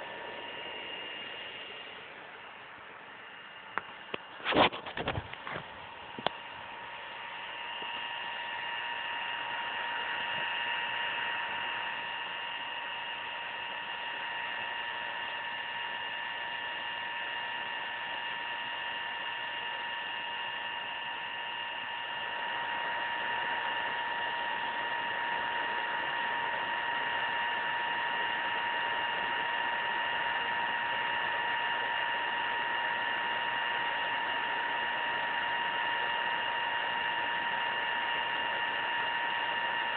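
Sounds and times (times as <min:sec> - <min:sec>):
high fan whine: 0:00.0 - 0:39.9
laptop cooling fan whirring: 0:00.0 - 0:39.9.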